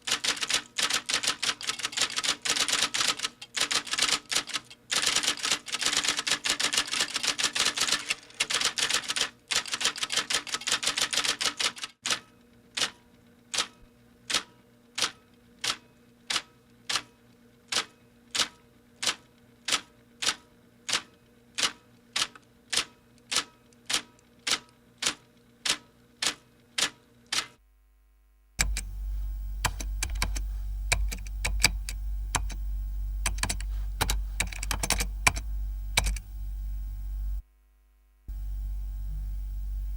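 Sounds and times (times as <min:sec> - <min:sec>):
keyboard typing clicks: 0:28.6 - 0:28.9, 0:29.6 - 0:32.6, 0:33.2 - 0:36.3
low hum: 0:28.6 - 0:37.4, 0:38.1 - 0:39.9.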